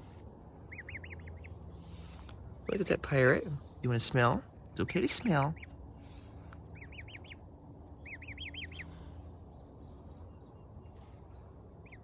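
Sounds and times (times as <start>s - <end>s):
gosling peeping: 0.2s - 9.0s.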